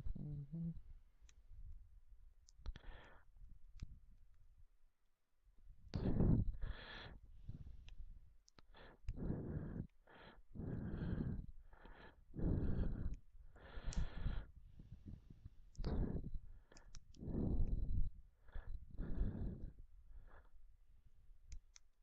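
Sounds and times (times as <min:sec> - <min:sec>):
person breathing heavily: 0:02.7 - 0:03.2, 0:06.0 - 0:07.7, 0:08.7 - 0:20.6
faint clicks: 0:13.0 - 0:14.1.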